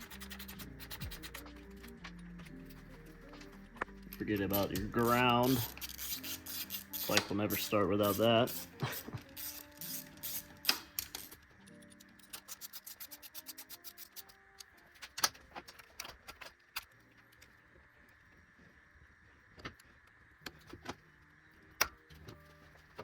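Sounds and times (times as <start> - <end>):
ratchet wrench clicking: 0.0 - 1.9, 4.1 - 15.3
background music: 0.0 - 16.2, 20.5 - 23.0.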